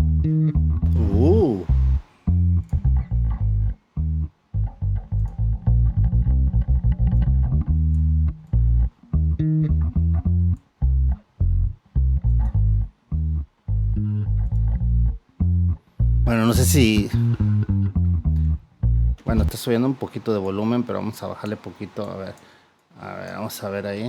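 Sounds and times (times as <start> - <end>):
electric bass guitar short notes: 0.0 - 19.6.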